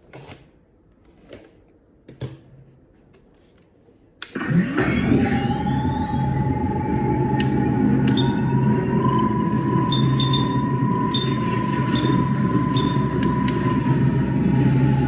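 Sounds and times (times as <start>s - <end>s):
electronic power-up whines: 4.7s - 15.0s
steady low hum: 4.9s - 15.0s
steady high tone: 5.0s - 15.0s.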